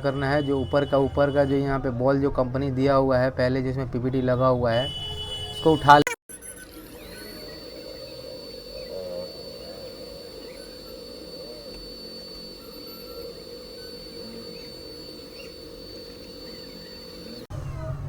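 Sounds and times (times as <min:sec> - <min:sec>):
high-pitched electrical whine: 0:00.0 - 0:01.7, 0:04.7 - 0:17.5
low hum: 0:06.4 - 0:17.6.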